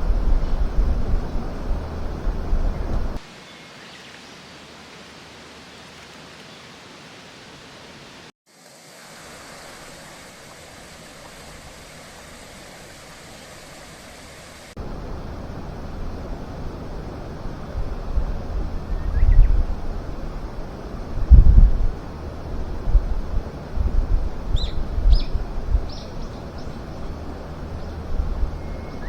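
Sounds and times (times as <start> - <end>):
gusty wind noise: 0.0 - 3.2, 14.8 - 29.0
rushing outdoor noise: 0.0 - 29.0.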